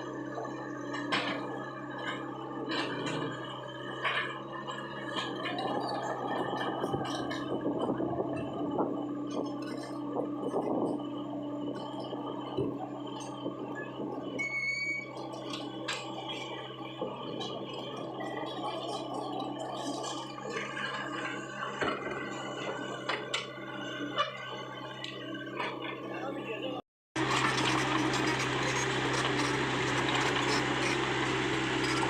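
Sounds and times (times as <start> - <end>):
excavator diesel engine humming: 0.0 - 32.0
high steady whine: 5.2 - 24.2.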